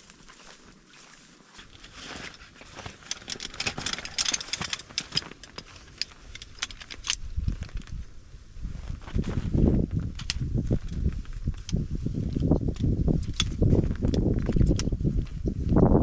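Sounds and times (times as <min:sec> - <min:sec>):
footsteps crunching through snow: 0:00.0 - 0:03.1, 0:07.3 - 0:12.6.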